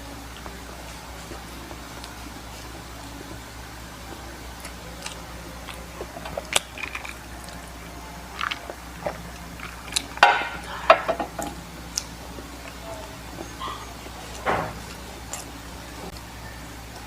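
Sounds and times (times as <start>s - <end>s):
person biting and chewing food: 4.5s - 12.8s.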